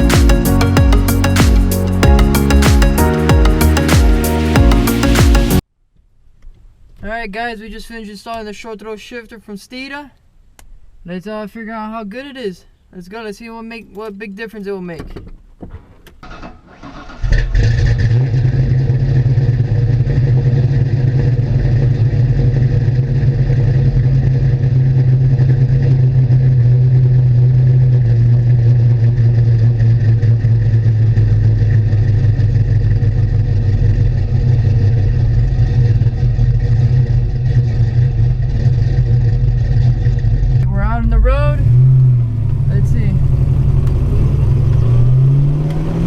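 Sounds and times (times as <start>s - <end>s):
car engine starting and idling: 0.0s - 5.6s, 16.2s - 46.0s.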